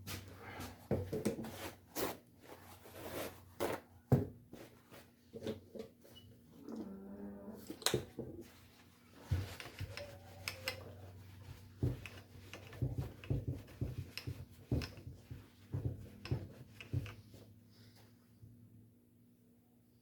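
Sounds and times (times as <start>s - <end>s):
tools clicking and knocking: 9.4s - 17.3s.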